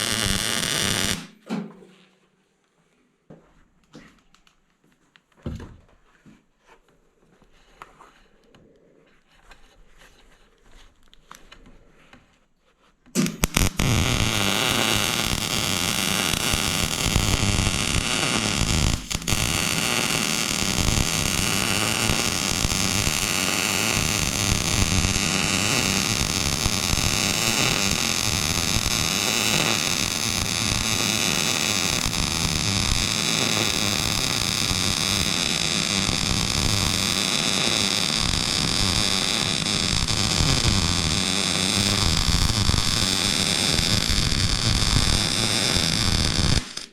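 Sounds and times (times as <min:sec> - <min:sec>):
welder crackling hiss: 0:00.0 - 0:01.4, 0:13.2 - 0:46.9
faint handling sounds: 0:01.7 - 0:13.2.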